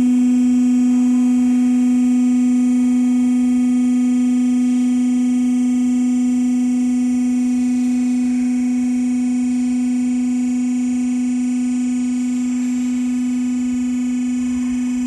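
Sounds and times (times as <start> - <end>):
hydraulic power unit humming: 0.0 - 15.0.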